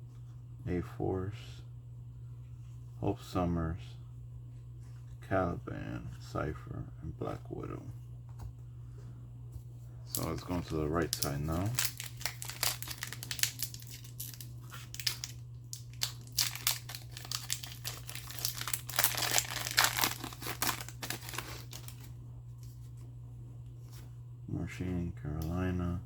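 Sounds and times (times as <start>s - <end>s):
foil wrapper tearing and crinkling: 10.2s - 22.1s.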